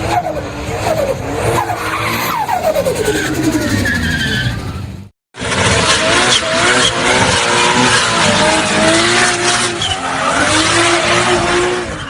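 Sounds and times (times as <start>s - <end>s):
tyres skidding squeal: 0.0s - 5.1s, 9.5s - 12.0s
car engine: 0.0s - 12.0s.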